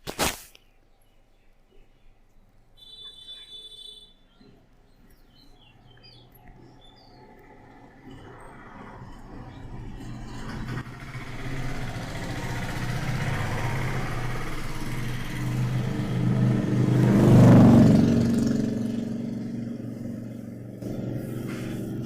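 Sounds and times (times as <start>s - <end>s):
vehicle engine passing: 5.7s - 22.0s.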